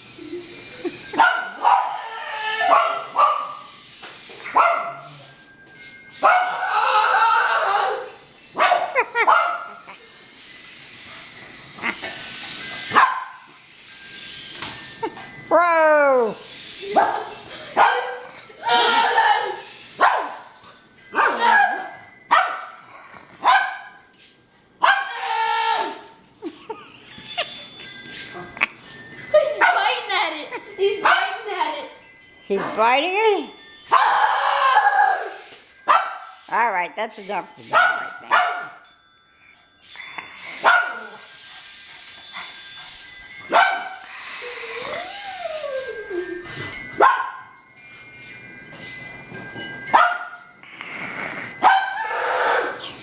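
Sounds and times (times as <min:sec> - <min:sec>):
dog barking: 0:37.7 - 0:38.8.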